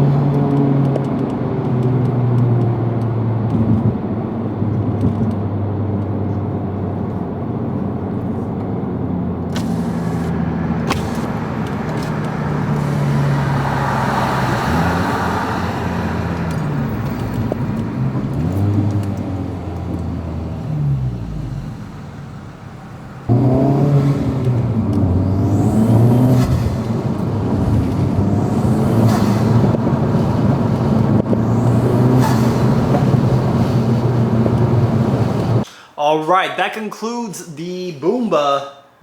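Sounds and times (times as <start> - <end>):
turbocharged car engine revving: 9.4 - 35.6.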